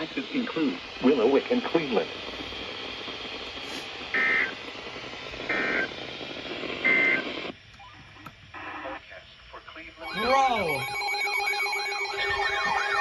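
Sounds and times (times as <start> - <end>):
radio hiss: 0.0 - 13.0
digital data tone bursts: 10.0 - 13.0.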